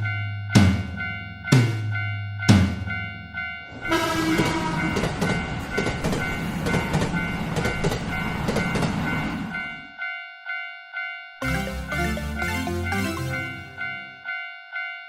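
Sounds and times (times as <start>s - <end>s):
train rumble with wheel clatter: 0.0s - 9.9s
railroad crossing bell: 0.0s - 15.0s
heavy drum beat: 0.6s - 3.0s
train horn falling in pitch: 3.7s - 5.4s.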